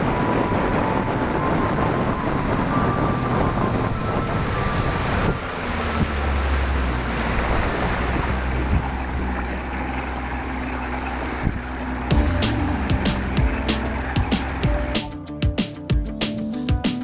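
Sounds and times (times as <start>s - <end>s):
wind buffeting microphone: 0.0s - 15.0s
low boat motor hum: 0.0s - 15.3s
water noise: 0.0s - 15.3s.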